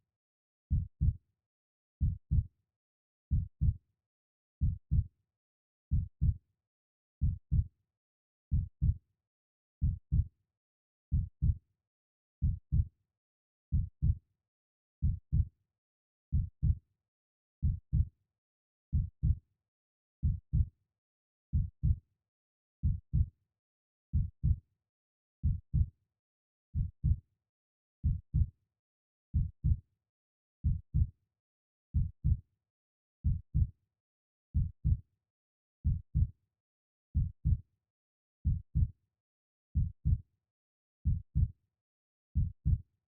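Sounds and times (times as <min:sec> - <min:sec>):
heartbeat thuds: 0:04.6 - 0:05.0, 0:17.6 - 0:18.1, 0:24.1 - 0:24.6, 0:34.6 - 0:35.0, 0:37.2 - 0:37.6, 0:39.8 - 0:40.2, 0:41.0 - 0:41.5, 0:42.4 - 0:42.8.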